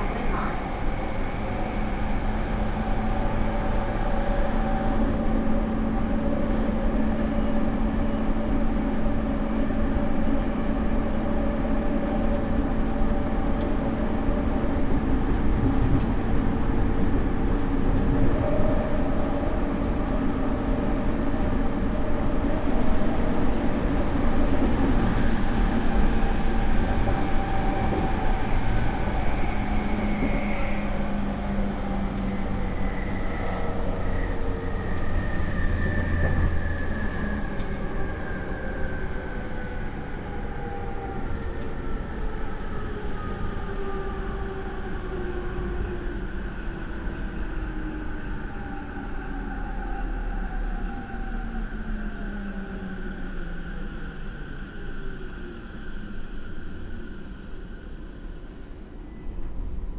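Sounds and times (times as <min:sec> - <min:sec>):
wheel and rail rumble: 0:00.0 - 0:42.3.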